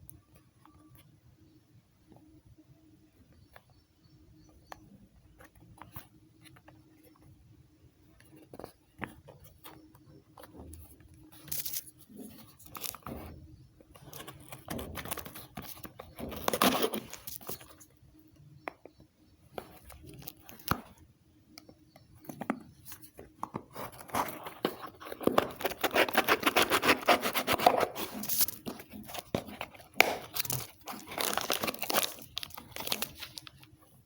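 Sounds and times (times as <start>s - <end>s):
packaging clicks and crinkles: 11.4s - 13.1s, 14.0s - 17.8s, 22.9s - 34.0s
packaging tearing and rustling: 23.9s - 33.7s.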